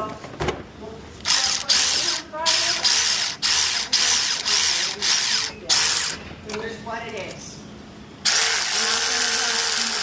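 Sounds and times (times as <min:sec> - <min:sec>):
air ratchet whining: 0:01.2 - 0:06.2, 0:08.2 - 0:10.0.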